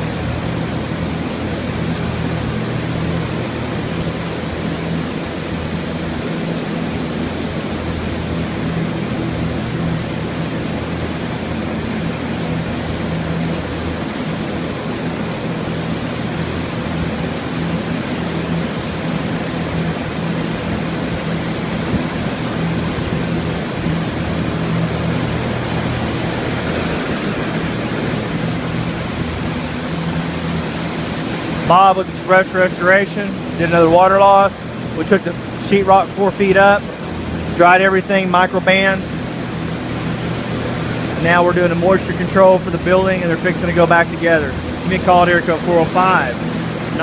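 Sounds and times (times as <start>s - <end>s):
drying fans rushing air: 0.0s - 47.0s
low motor hum: 0.0s - 47.0s.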